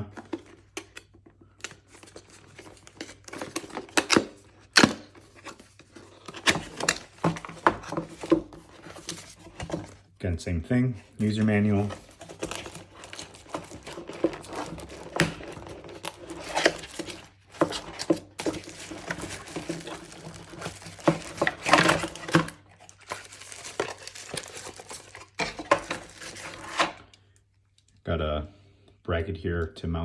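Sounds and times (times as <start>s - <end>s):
cardboard rustling: 0.0s - 27.2s
plastic packaging crinkling: 11.2s - 27.2s.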